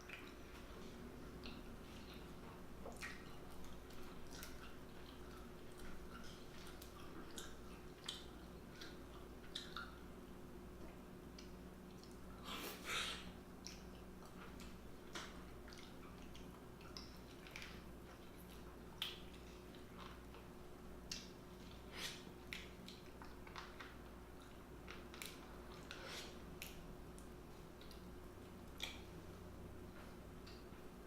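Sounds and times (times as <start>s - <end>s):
wet chewing: 0.0s - 10.0s, 13.6s - 20.5s
faint steady hum: 0.0s - 31.0s.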